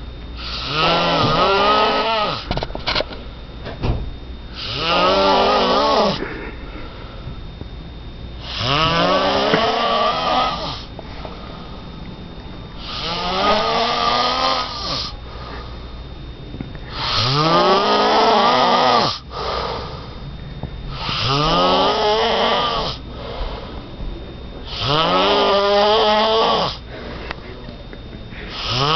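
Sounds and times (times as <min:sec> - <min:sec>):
person snoring: 0:00.4 - 0:02.5, 0:04.5 - 0:07.0, 0:08.4 - 0:10.9, 0:12.8 - 0:15.7, 0:16.8 - 0:20.2, 0:20.9 - 0:23.9, 0:24.6 - 0:26.9, 0:28.4 - 0:28.9.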